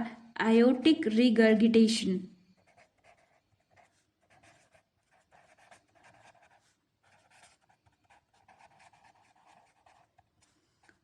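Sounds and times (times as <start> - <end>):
faint scratching: 2.6 - 11.0.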